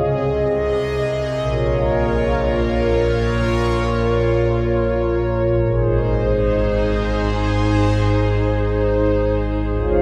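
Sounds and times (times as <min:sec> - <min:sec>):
sustained keyboard chords: 0:00.0 - 0:10.0.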